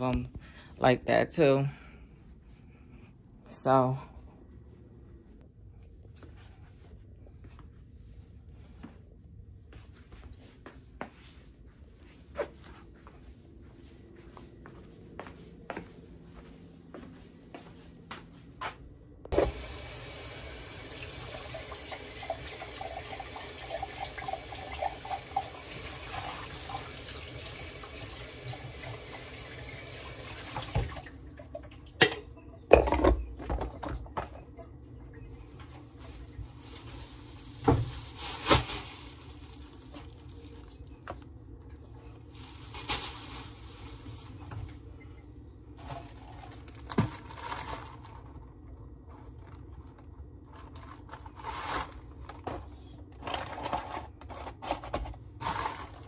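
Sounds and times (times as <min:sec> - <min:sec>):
water running: 0:19.3 - 0:32.0.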